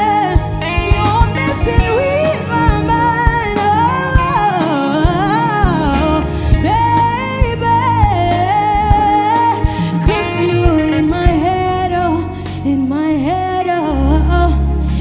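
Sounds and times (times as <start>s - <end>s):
person singing long notes: 0.0s - 12.3s
band playing: 0.0s - 15.0s
kick drum beat: 4.2s - 8.2s.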